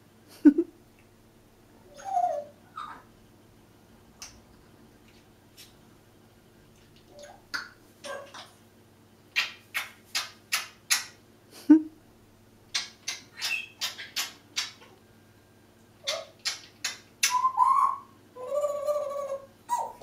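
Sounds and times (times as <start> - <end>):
parrot clicking: 16.0 - 17.4
parrot whistle: 17.2 - 20.0.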